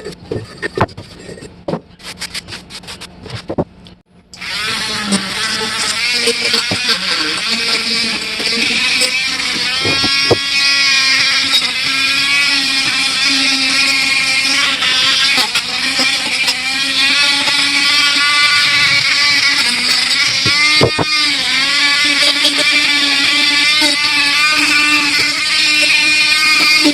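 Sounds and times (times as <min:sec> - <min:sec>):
power tool motor running: 0:04.3 - 0:26.9
sharp knocks: 0:20.3 - 0:21.1.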